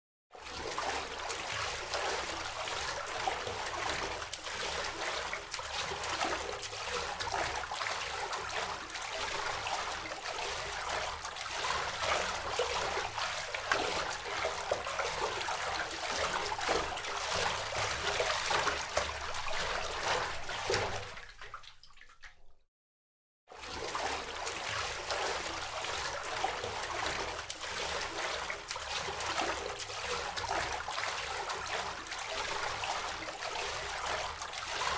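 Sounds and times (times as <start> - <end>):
swimmer splashing water: 0.7 - 21.8, 23.8 - 34.9.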